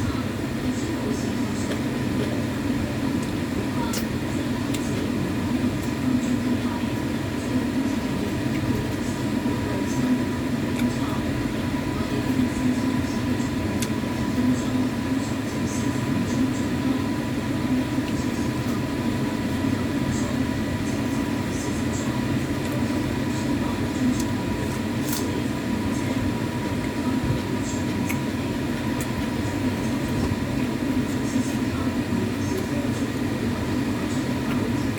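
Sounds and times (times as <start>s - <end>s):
low rumbling background noise: 0.0s - 34.9s
chewing clicks: 27.8s - 29.4s.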